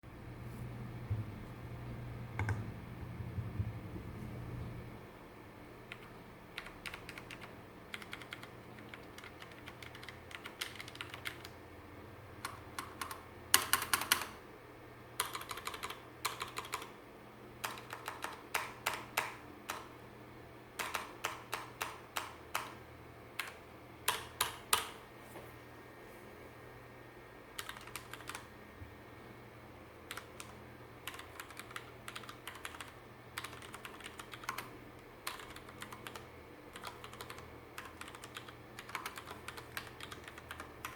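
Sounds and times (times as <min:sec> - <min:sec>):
mechanical keyboard typing: 0:02.4 - 0:02.6, 0:05.9 - 0:11.6, 0:12.4 - 0:14.4, 0:15.2 - 0:16.9, 0:17.6 - 0:19.9, 0:20.8 - 0:22.8, 0:23.4 - 0:25.0, 0:27.6 - 0:28.5, 0:30.1 - 0:40.9.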